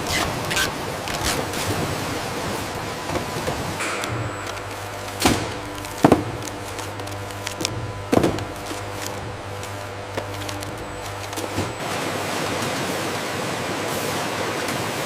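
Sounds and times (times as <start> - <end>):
low machine hum: 0.0 - 15.0
sharp knocks and thuds: 3.1 - 11.8.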